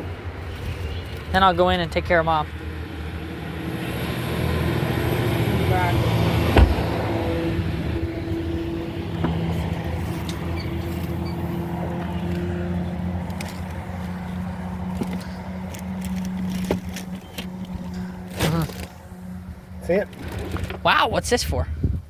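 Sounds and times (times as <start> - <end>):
sharp thump: 6.5 - 7.0.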